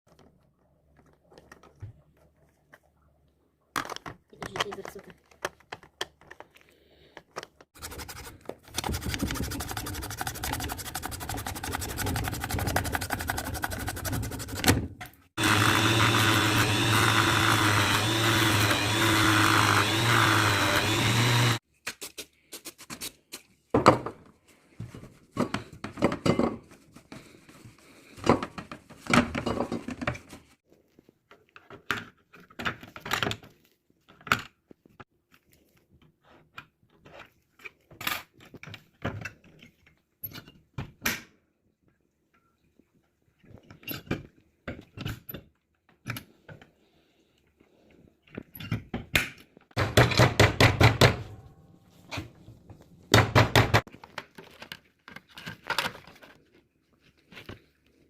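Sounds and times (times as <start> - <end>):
power tool motor running: 15.4 - 21.6.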